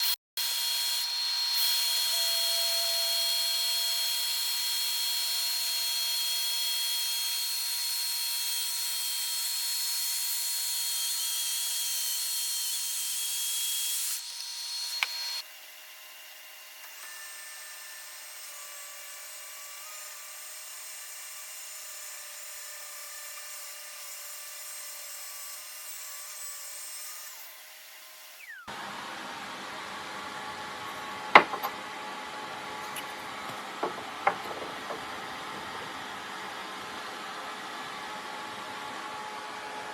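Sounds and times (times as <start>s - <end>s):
power tool whining on wood: 0.0s - 36.1s.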